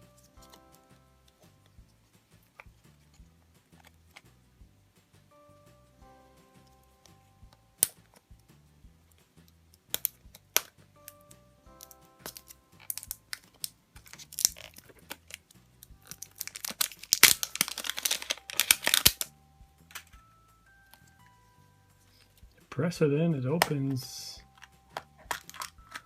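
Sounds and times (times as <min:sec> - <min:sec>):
soft background music: 0:00.0 - 0:26.0
plastic wrapper crinkling and tearing: 0:12.2 - 0:19.3, 0:24.4 - 0:26.0.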